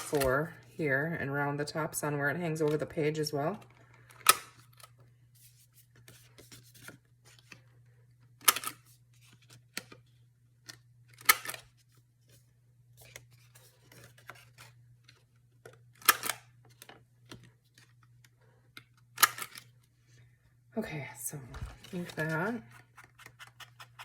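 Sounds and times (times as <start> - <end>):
corner punch snapping through paper: 0.0 - 0.3
paper and tool handling clicks: 0.0 - 0.5, 13.0 - 19.7, 21.6 - 24.0.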